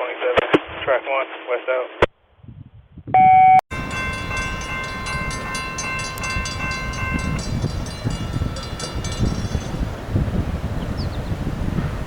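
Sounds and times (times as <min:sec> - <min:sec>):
rapid high ringing: 0:03.7 - 0:10.1
train rumbling past: 0:03.7 - 0:12.0.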